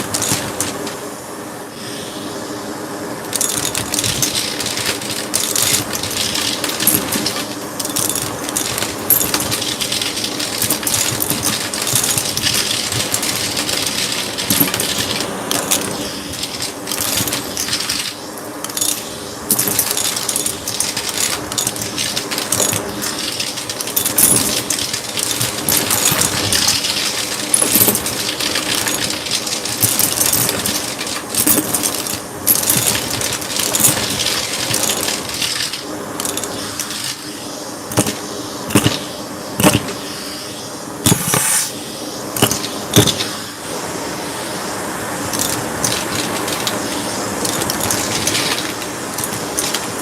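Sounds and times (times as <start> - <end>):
debris crackling and rattling: 3.3 - 37.2, 45.4 - 50.0.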